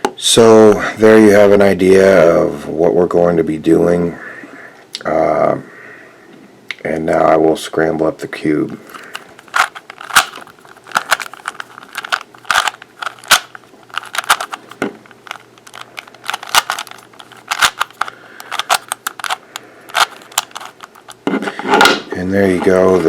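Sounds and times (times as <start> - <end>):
puzzle cube plastic clicks: 8.9 - 21.2.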